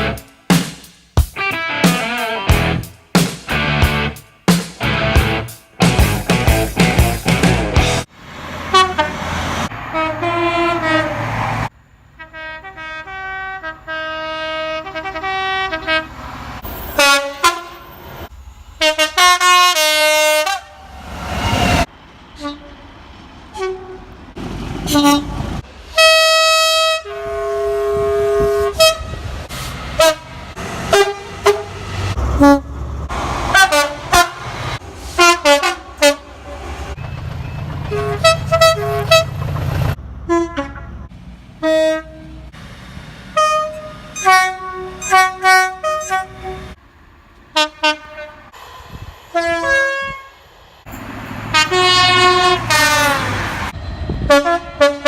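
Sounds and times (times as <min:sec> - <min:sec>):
low train rumble: 0:02.5 - 0:55.0
train horn blasts: 0:08.7 - 0:11.5, 0:12.2 - 0:18.0, 0:18.8 - 0:22.9, 0:23.5 - 0:24.2, 0:24.9 - 0:29.4, 0:30.0 - 0:32.8, 0:33.5 - 0:36.8, 0:37.9 - 0:39.4, 0:40.3 - 0:42.5, 0:43.4 - 0:46.8, 0:47.6 - 0:48.6, 0:49.3 - 0:50.4, 0:51.4 - 0:53.5, 0:54.1 - 0:55.0.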